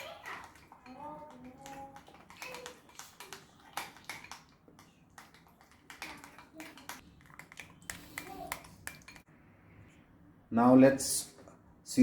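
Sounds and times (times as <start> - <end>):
spoon tapping against bowl: 1.3 - 9.3.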